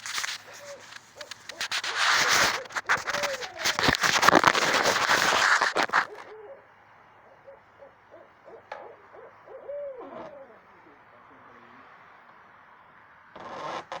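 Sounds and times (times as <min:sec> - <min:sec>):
microphone crackling: 0:00.0 - 0:06.3
owl hooting: 0:00.0 - 0:11.8.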